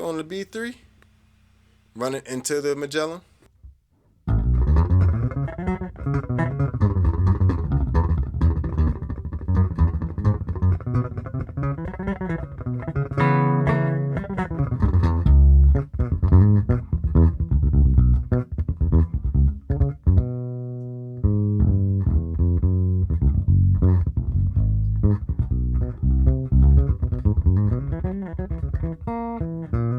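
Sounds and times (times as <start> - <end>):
electric bass playing: 4.3 - 29.9.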